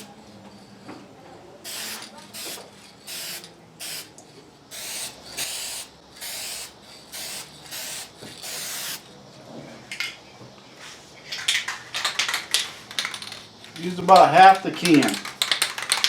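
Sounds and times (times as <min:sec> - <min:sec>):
aerosol spray can hissing: 0:01.7 - 0:04.1, 0:04.7 - 0:09.1.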